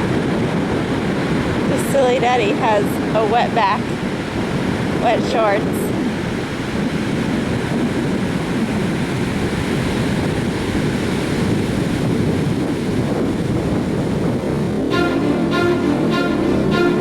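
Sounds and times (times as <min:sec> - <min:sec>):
ocean surf breaking: 0:00.0 - 0:06.8, 0:13.9 - 0:17.0
wind buffeting microphone: 0:00.0 - 0:17.0.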